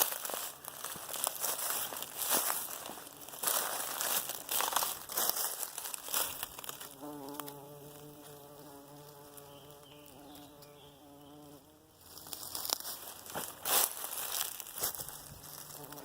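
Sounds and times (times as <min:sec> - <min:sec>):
footsteps in dry leaves: 0:00.0 - 0:07.0, 0:12.0 - 0:16.0
insect buzzing: 0:00.0 - 0:12.8, 0:14.9 - 0:16.0.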